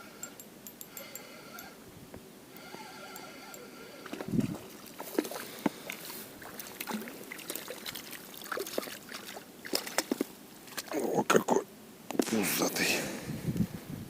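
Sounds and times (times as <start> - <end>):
water dripping: 2.6 - 10.9
fish splashing in water: 4.0 - 10.9.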